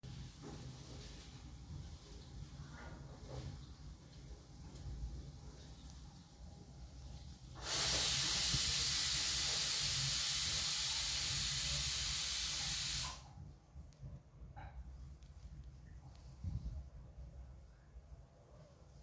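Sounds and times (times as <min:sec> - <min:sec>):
steady hiss: 0:05.6 - 0:13.4.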